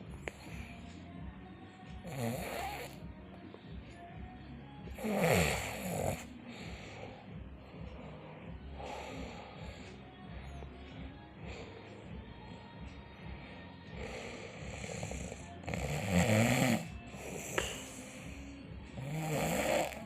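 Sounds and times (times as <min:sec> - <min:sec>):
man snoring: 0:02.0 - 0:03.0, 0:04.9 - 0:07.0, 0:13.8 - 0:20.0.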